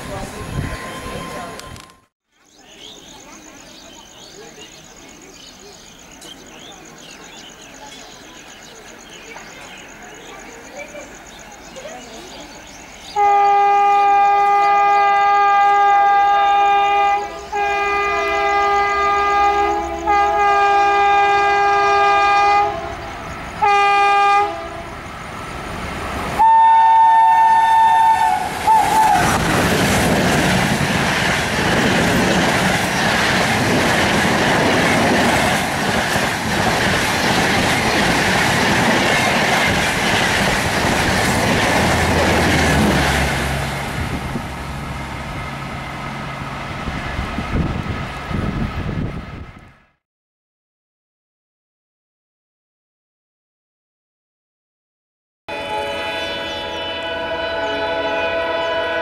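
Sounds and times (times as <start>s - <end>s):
train wheels on rails: 0.0s - 13.3s, 27.7s - 49.8s
locomotive horn blasts: 13.2s - 23.0s, 23.6s - 24.9s, 26.4s - 29.4s, 55.5s - 59.0s
higher single-note horn: 55.5s - 59.0s.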